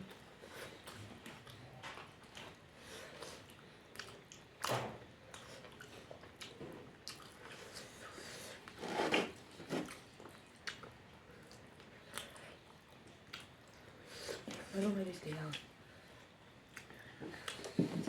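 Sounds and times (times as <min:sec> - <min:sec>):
wet chewing: 0:10.6 - 0:13.8.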